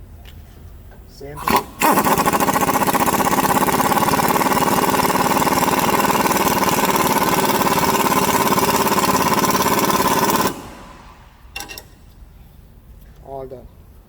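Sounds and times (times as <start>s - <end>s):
pneumatic impact wrench hammering: 1.4s - 12.0s.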